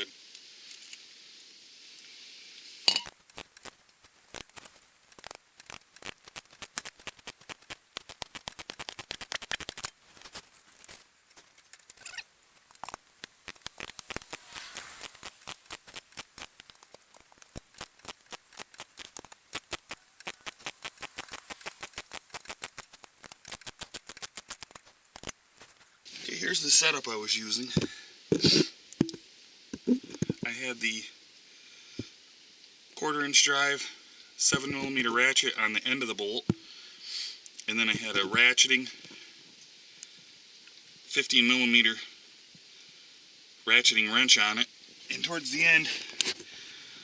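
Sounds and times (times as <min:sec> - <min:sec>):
ratcheting wrench clicking: 0:11.6 - 0:25.4.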